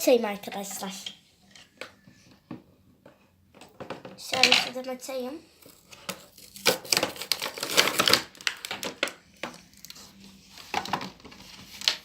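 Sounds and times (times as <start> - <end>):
cardboard and plastic tearing: 5.7 - 9.2.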